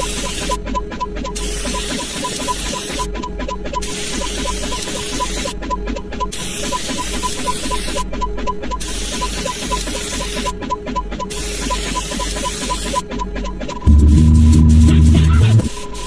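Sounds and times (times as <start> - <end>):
low hum: 13.8 - 15.8
steady electronic hiss: 13.9 - 16.0.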